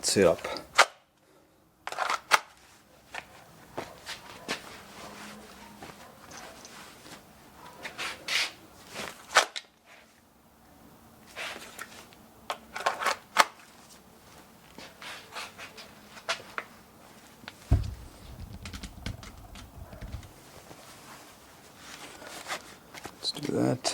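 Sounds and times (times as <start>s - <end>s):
fabric and belt rustling: 2.5s - 9.3s, 13.6s - 23.2s.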